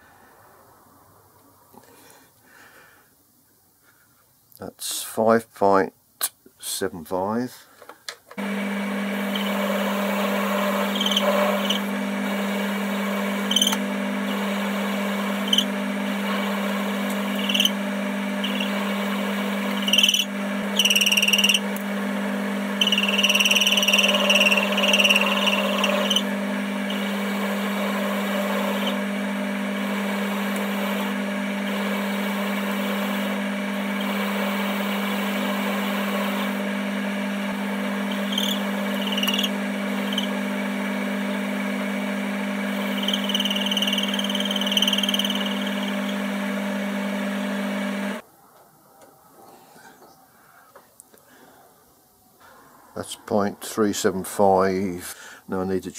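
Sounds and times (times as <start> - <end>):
metal lathe motor hum: 8.4 - 48.2
cutting tool scraping metal: 9.2 - 12.4, 13.2 - 17.8, 18.4 - 21.7, 22.8 - 29.1, 38.0 - 40.4, 42.8 - 46.2.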